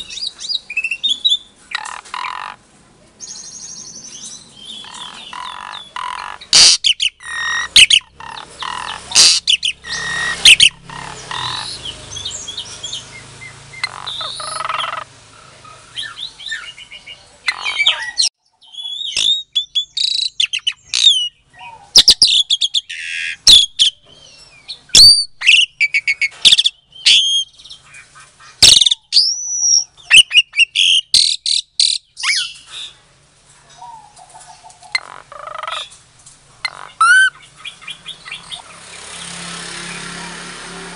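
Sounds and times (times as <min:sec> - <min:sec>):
starling singing: 0:00.0 - 0:02.6, 0:03.2 - 0:33.0, 0:33.7 - 0:36.0, 0:36.6 - 0:40.5.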